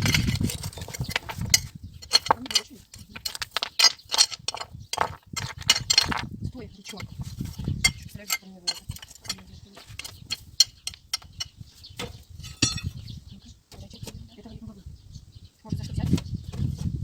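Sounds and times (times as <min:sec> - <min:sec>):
bricks and stones knocking: 0:00.0 - 0:13.0.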